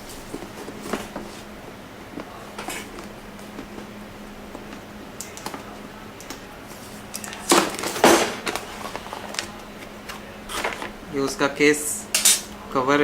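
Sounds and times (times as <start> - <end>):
crinkling scrape: 0.0 - 5.7, 6.3 - 11.0
cardboard and packaging rustling: 0.0 - 11.2
faint steady hum: 0.0 - 13.0.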